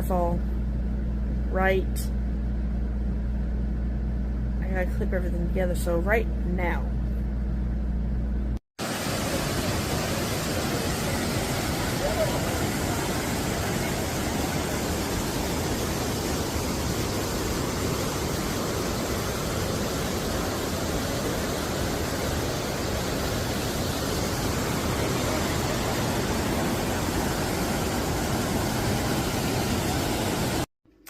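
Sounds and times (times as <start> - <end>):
waterfall roaring: 8.8 - 30.7.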